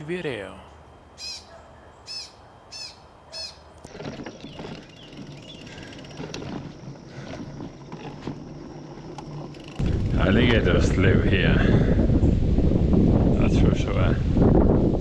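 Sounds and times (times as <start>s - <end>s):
faint bird chirps: 0.6s - 3.8s
songbird sharp call: 0.7s - 3.8s
bicycle riding on trail: 3.4s - 10.5s.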